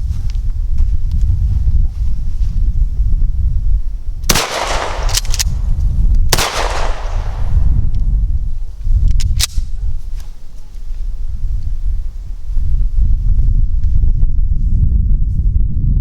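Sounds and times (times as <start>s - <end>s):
wind rumble on microphone: 0.0s - 16.0s
shotgun pump action clacking: 4.3s - 5.6s, 6.4s - 7.4s
shotgun shots echoing: 4.3s - 5.6s, 6.3s - 7.7s.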